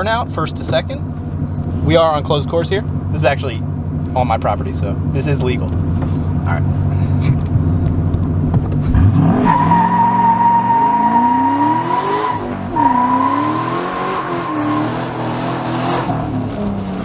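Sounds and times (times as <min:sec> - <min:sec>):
car engine revving: 0:00.0 - 0:17.0
tyres squealing: 0:09.4 - 0:16.2.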